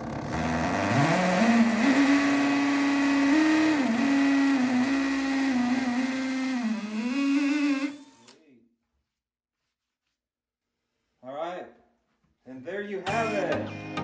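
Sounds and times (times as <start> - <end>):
drill boring into tile: 0.0 - 8.4.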